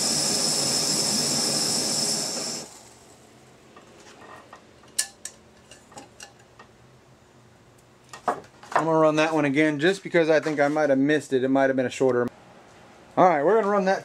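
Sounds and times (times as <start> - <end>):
camping stove burner hissing: 0.0 - 3.2.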